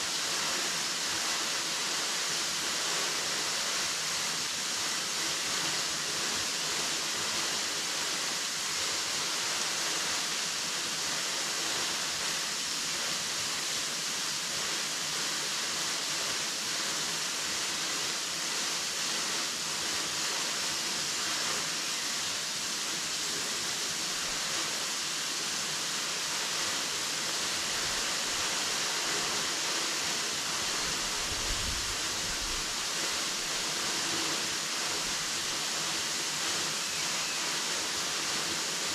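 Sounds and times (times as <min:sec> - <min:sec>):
waterfall rushing: 0:16.9 - 0:38.9.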